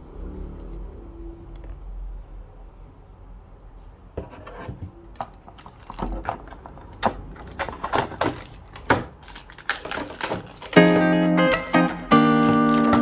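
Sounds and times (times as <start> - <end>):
hands handling plastic packaging: 5.1 - 13.0.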